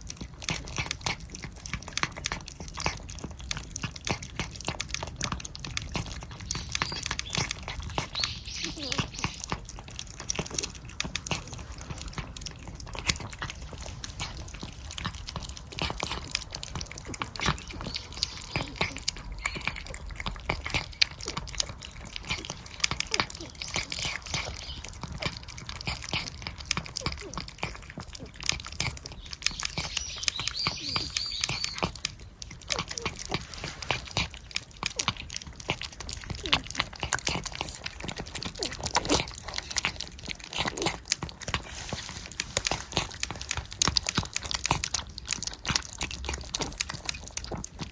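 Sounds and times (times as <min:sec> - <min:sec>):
cats licking and chewing: 0:00.0 - 0:47.9.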